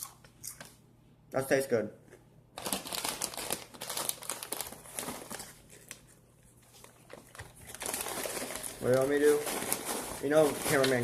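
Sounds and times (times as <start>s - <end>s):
chip bag crinkling: 2.6s - 6.2s, 6.8s - 11.0s.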